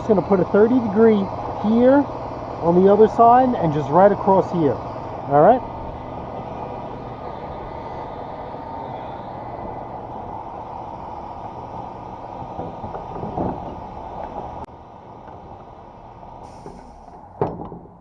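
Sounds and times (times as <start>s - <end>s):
short hiss of air: 16.4s - 17.3s.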